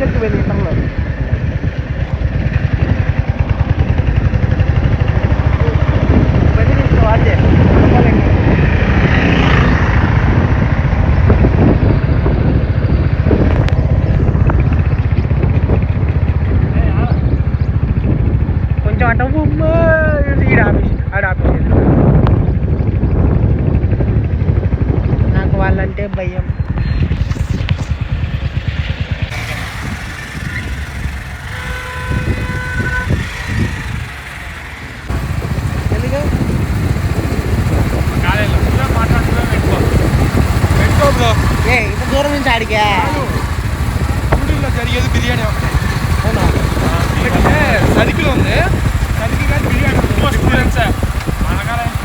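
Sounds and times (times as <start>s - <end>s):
moving vehicle rumble: 0.0s - 52.0s
wind buffeting microphone: 0.0s - 52.0s
vehicle horn: 29.3s - 36.3s.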